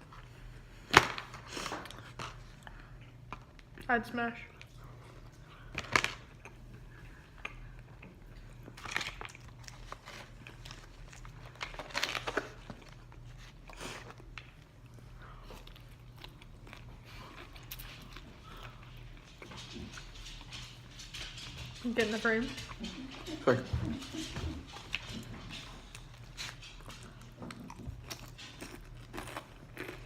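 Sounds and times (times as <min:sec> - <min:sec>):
low steady hum: 0:00.0 - 0:30.0
crunching fried chicken: 0:05.6 - 0:20.1, 0:24.8 - 0:30.0.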